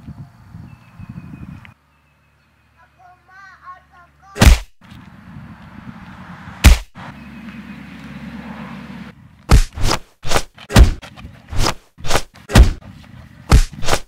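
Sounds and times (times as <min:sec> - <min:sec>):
loud sharp bangs: 0:04.4 - 0:04.8, 0:06.6 - 0:07.0, 0:09.5 - 0:12.8.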